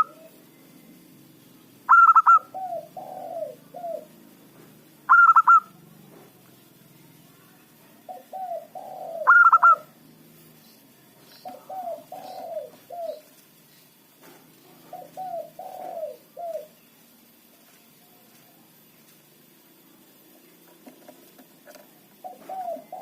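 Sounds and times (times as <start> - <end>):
dove cooing: 0.0 - 0.4, 1.8 - 4.3, 5.1 - 5.8, 8.0 - 10.0, 11.2 - 13.4, 14.6 - 16.8, 22.1 - 23.0
high chirps: 1.8 - 4.2, 5.0 - 5.8, 8.1 - 14.0.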